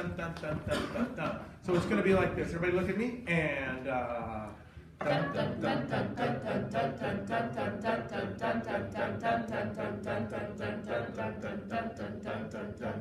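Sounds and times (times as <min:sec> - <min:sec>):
choir chanting in unison: 0:05.0 - 0:13.0.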